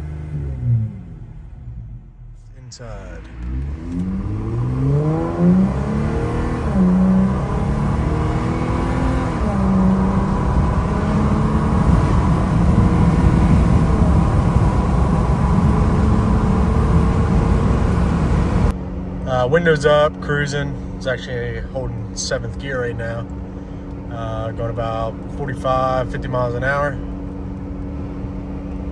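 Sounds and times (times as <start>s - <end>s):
car engine accelerating through gears: 0.0s - 19.3s.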